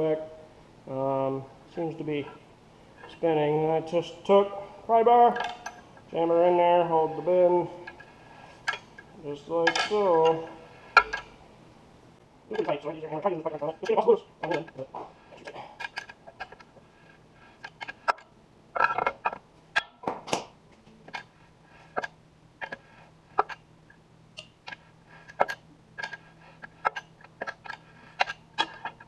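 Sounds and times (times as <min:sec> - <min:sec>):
faint steady hum: 0:00.0 - 0:29.0
metal scraping: 0:02.1 - 0:11.4.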